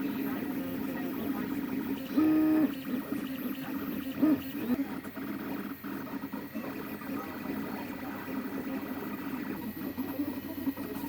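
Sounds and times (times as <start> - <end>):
printer motors and fans humming: 0.0 - 11.0.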